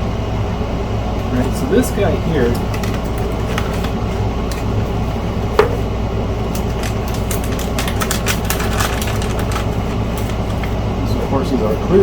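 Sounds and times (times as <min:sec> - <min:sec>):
steady background hum: 0:00.0 - 0:12.0
computer parts clicking and tapping: 0:06.5 - 0:10.7.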